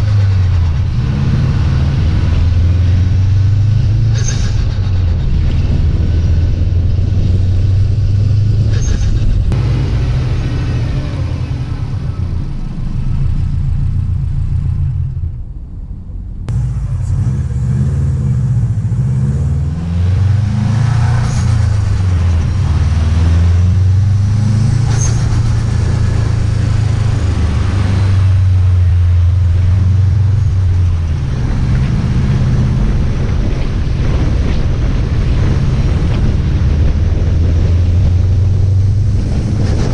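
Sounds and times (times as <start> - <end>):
car engine and exhaust drone: 0.0 - 39.9.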